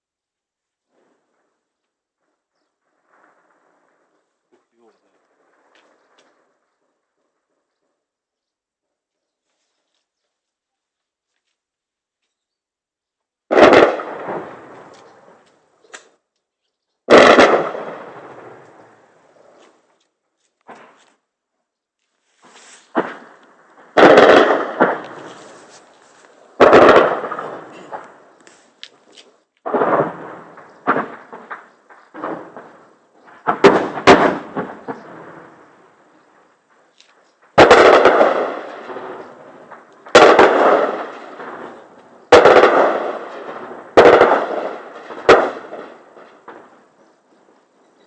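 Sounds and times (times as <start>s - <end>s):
gunfire blasts with echo: 13.5s - 15.4s, 17.1s - 19.3s, 22.9s - 25.8s, 26.4s - 28.4s, 29.6s - 36.9s, 37.5s - 47.1s.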